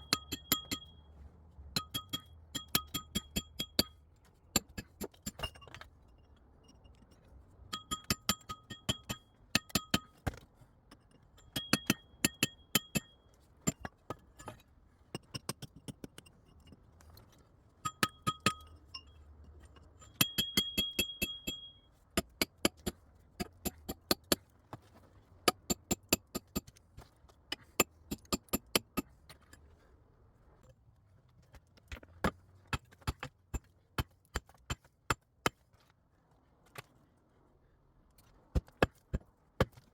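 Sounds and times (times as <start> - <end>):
metal tool striking rock: 0.0 - 1.0, 1.8 - 5.9, 7.7 - 10.4, 11.4 - 14.6, 17.8 - 19.0, 20.0 - 24.4, 25.4 - 26.7, 27.5 - 29.1.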